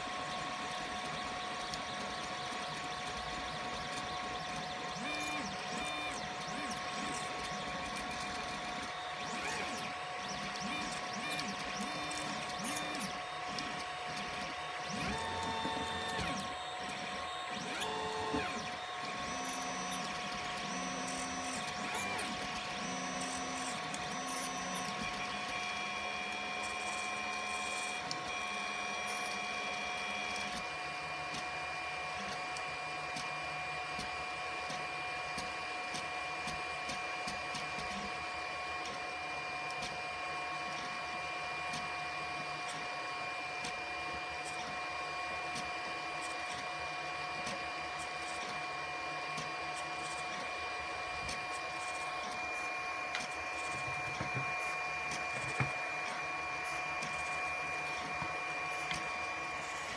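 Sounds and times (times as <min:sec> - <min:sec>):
mechanical hum: 0:00.0 - 0:59.9
stepper motors whining: 0:00.4 - 0:30.5, 0:49.6 - 0:59.9.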